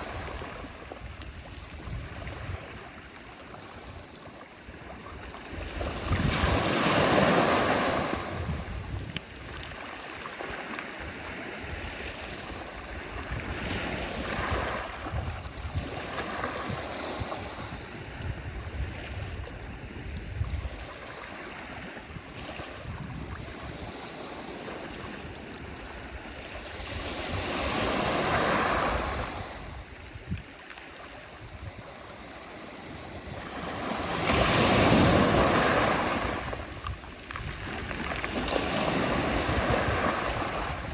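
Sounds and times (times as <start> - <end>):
wind buffeting microphone: 0.0 - 3.0, 4.9 - 9.9, 11.0 - 21.0, 22.0 - 24.0, 31.3 - 40.9
sea waves breaking on shore: 0.0 - 40.9.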